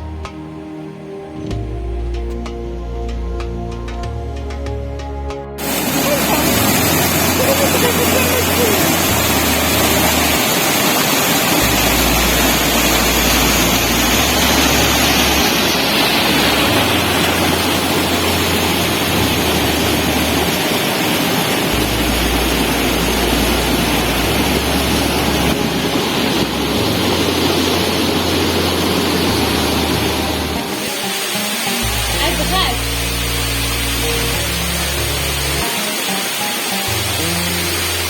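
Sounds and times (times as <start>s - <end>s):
waterfall rushing: 5.6s - 38.0s.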